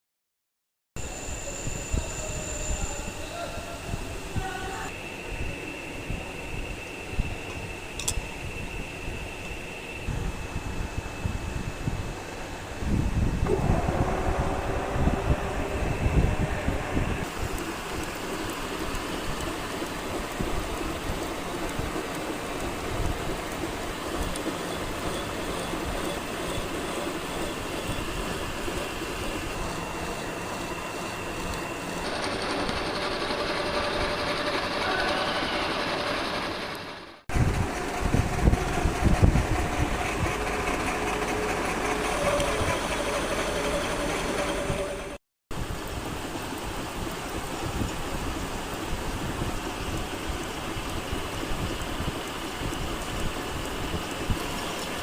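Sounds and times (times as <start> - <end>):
machinery droning: 1.0 - 45.2.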